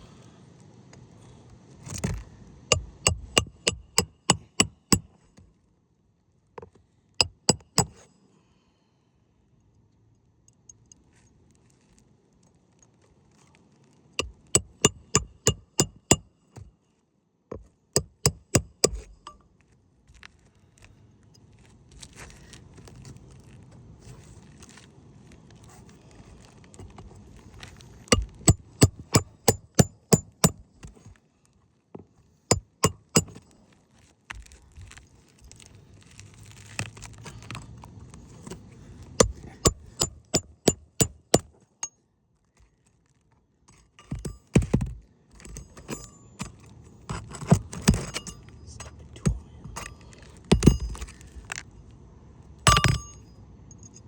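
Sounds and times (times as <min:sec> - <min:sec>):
metal hammer strikes: 0:02.7 - 0:05.1, 0:07.2 - 0:08.0, 0:14.2 - 0:16.3, 0:18.0 - 0:19.1, 0:28.1 - 0:30.6, 0:32.5 - 0:33.4, 0:39.2 - 0:41.4, 0:49.7 - 0:51.1, 0:52.7 - 0:53.3
rough scraping and rustling: 0:20.2 - 0:28.4, 0:33.5 - 0:39.6.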